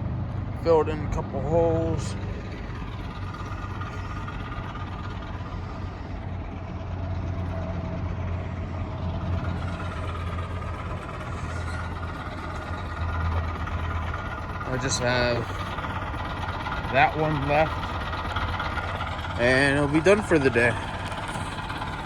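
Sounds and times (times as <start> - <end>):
machine engine humming: 0.0 - 22.0.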